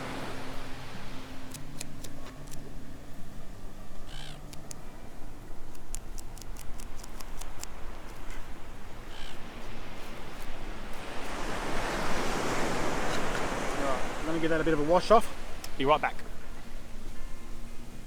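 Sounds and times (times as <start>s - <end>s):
surf: 0.0s - 2.6s, 6.7s - 18.0s
seagull calling: 0.0s - 5.2s, 6.0s - 18.0s.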